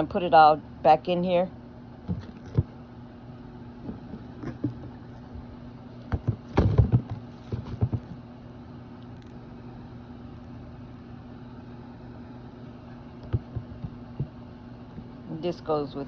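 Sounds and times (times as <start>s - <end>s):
steady low hum: 0.0s - 16.0s
plastic containers knocking: 3.8s - 5.0s, 6.1s - 8.2s, 13.2s - 14.4s.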